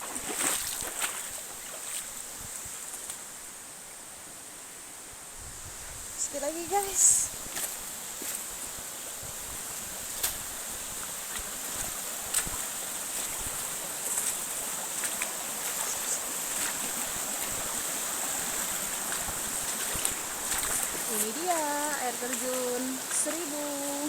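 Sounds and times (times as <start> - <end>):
waterfall rushing: 9.7 - 24.0.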